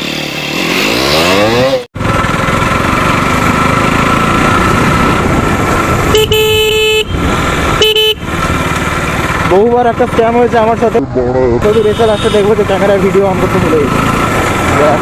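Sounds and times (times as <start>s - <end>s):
motorcycle engine revving: 0.0s - 15.0s
road noise: 0.0s - 15.0s
vehicle horn: 6.0s - 8.4s, 11.6s - 12.7s.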